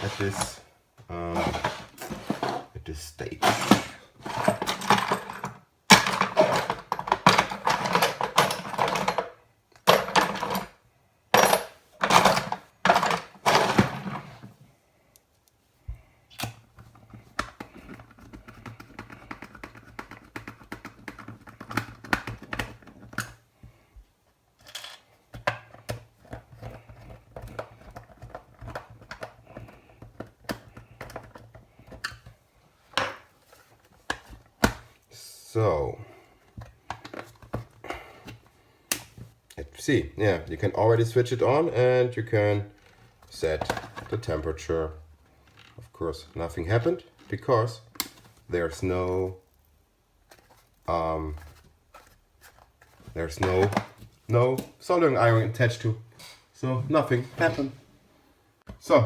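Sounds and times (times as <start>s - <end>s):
clicking and handling of plastic case: 16.3s - 23.8s, 24.6s - 34.9s, 36.4s - 39.3s, 50.2s - 54.8s.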